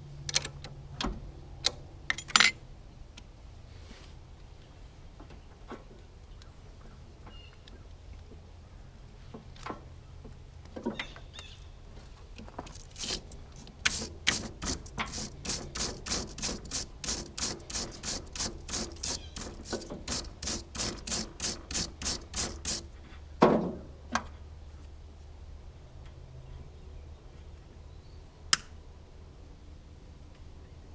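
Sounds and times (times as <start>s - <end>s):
hand tool clicking: 12.9s - 22.9s.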